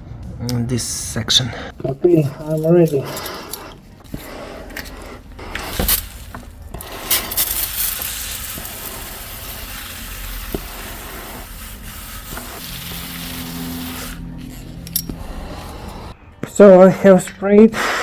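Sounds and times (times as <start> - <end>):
spray hissing: 3.1 - 16.2.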